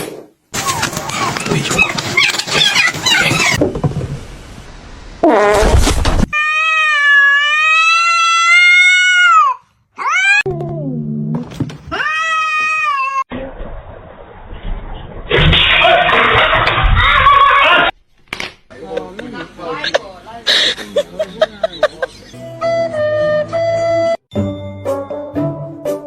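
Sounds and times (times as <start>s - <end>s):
cat meowing: 6.4s - 10.6s.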